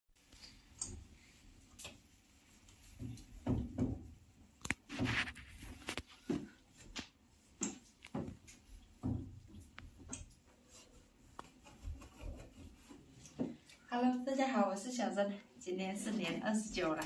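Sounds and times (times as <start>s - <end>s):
objects being handled: 4.6s - 13.8s.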